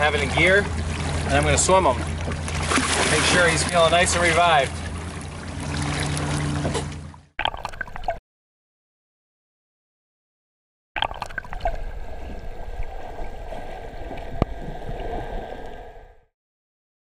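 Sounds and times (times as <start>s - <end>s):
water rushing and gurgling: 0.0s - 8.2s, 11.0s - 16.3s.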